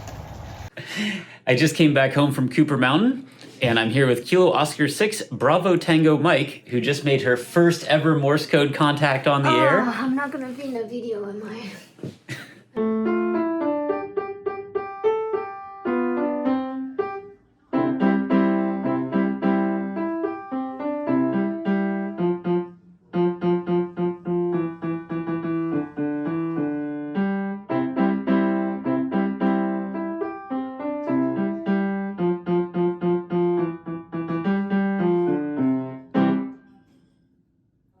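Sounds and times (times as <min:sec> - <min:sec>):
piano music: 0:09.4 - 0:10.1, 0:12.8 - 0:36.8.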